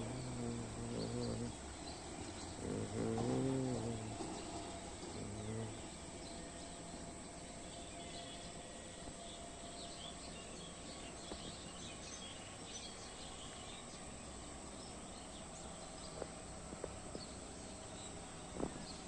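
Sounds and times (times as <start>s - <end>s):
faint background hum: 0.0s - 19.0s
small birds chirping: 0.0s - 19.0s.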